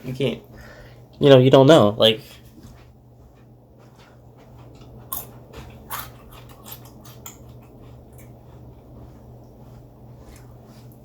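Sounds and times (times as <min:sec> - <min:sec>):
chewing crunches: 0:04.0 - 0:11.0
corn chip crunching: 0:04.7 - 0:09.2.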